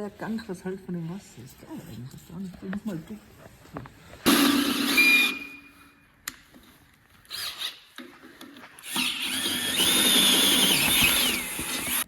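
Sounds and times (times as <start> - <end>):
handheld power tool whirring: 4.2 - 5.7, 7.2 - 12.0.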